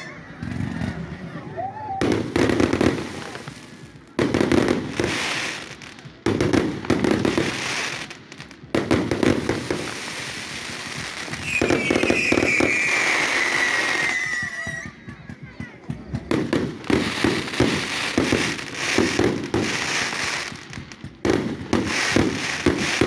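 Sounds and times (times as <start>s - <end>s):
firework bangs with crackling: 0.0s - 23.0s
high falling whistle: 11.4s - 14.9s.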